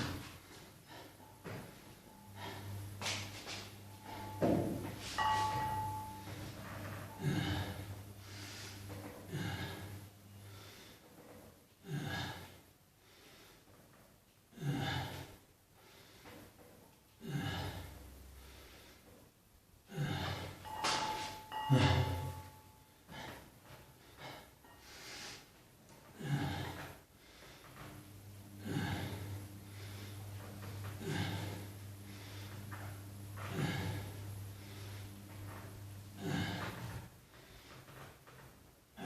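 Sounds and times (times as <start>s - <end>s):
person breathing hard: 0.3s - 1.3s, 2.1s - 3.0s, 6.2s - 11.1s, 19.9s - 25.6s, 28.6s - 30.3s, 31.0s - 32.6s.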